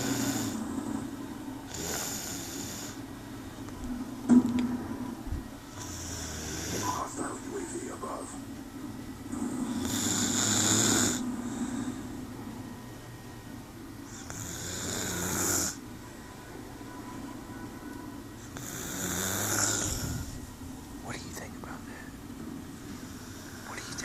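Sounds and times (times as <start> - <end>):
woman snoring: 0.0 - 0.6, 1.7 - 3.0, 5.8 - 7.1, 9.7 - 12.0, 14.1 - 15.8, 18.6 - 20.4
quiet breathing: 0.0 - 0.8, 9.6 - 12.4, 21.3 - 24.0.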